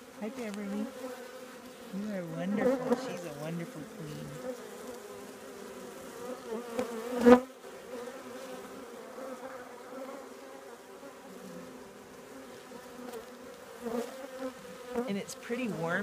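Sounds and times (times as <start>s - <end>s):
bees buzzing: 0.0s - 16.0s.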